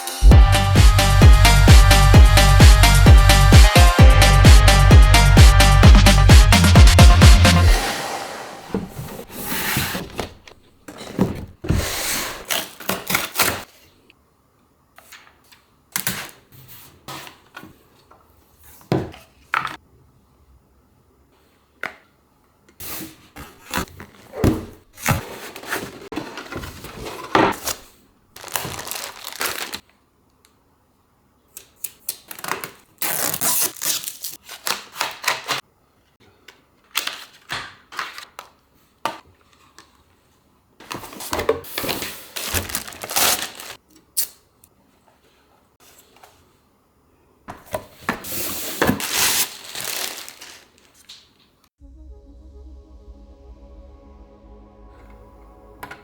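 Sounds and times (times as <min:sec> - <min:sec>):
packaging rustling and tearing: 0:12.2 - 0:13.7, 0:25.0 - 0:29.9, 0:32.1 - 0:35.6, 0:40.9 - 0:43.8, 0:48.3 - 0:51.3.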